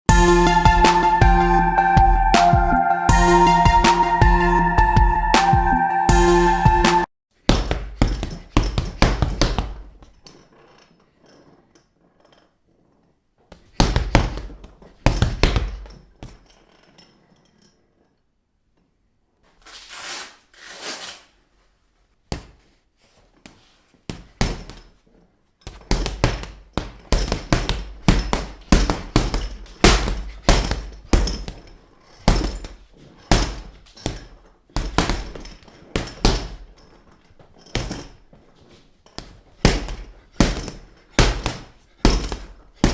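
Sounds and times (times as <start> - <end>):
fists striking a punching bag: 7.5 - 10.0, 13.7 - 15.9, 24.1 - 24.9, 25.7 - 36.7, 39.2 - 42.9.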